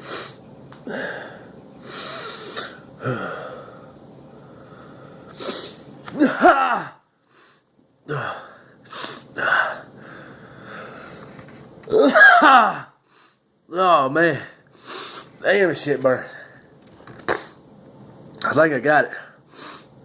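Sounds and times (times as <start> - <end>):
wheezy breaths: 0.0 - 5.9, 14.6 - 15.4, 19.3 - 20.0
man sniffing: 1.8 - 3.5, 5.3 - 5.9
man sneezing: 5.4 - 7.0, 11.9 - 12.9.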